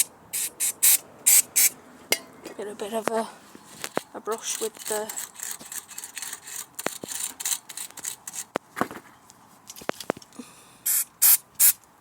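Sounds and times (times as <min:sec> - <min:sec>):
aerosol spray hissing: 0:00.0 - 0:01.7, 0:10.9 - 0:11.8.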